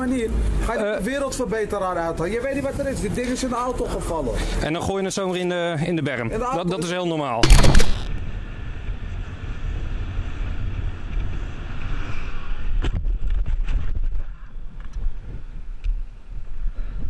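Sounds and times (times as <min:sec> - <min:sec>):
sharp clicks: 0:07.4 - 0:08.2
wind buffeting microphone: 0:08.2 - 0:17.0.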